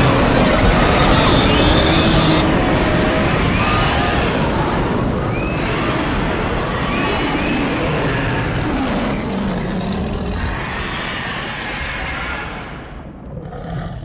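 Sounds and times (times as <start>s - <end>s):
faint high cries: 0.0s - 8.8s
herd of hooves rumbling: 0.0s - 12.1s.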